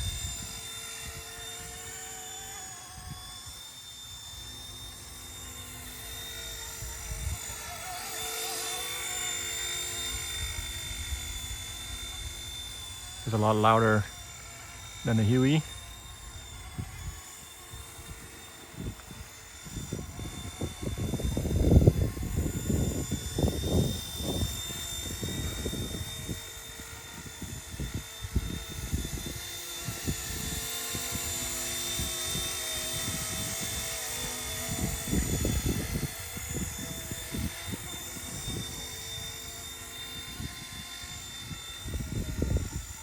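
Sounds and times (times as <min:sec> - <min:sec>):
model helicopter motor whining: 0:00.0 - 0:43.0
wind buffeting microphone: 0:15.0 - 0:39.3, 0:40.2 - 0:43.0.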